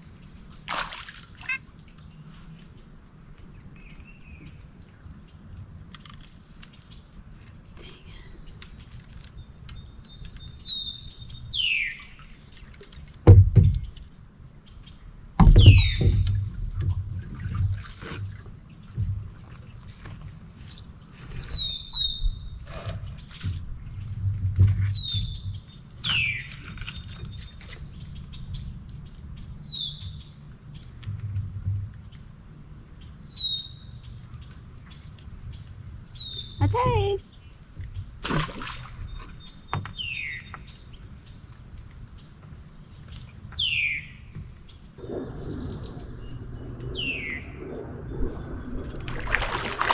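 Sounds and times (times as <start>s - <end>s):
low thumps with rumble: 13.2s - 14.0s, 15.4s - 19.7s, 22.2s - 25.9s, 30.8s - 32.0s, 44.4s - 49.9s
birds calling: 15.4s - 16.3s, 21.3s - 24.1s, 42.9s - 49.7s.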